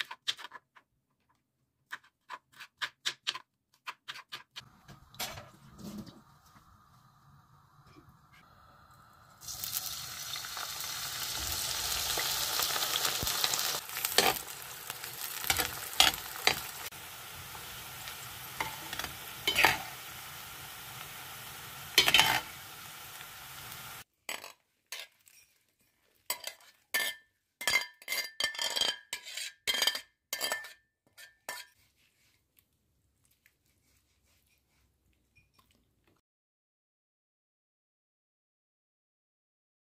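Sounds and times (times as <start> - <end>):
food sizzling in a pan: 4.6 - 24.1.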